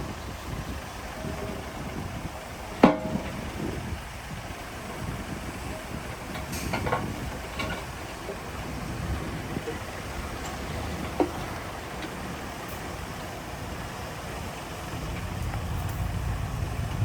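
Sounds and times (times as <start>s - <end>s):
heavy machinery rumbling: 0.0s - 17.0s
light metal clanks: 2.8s - 3.5s, 6.3s - 8.5s.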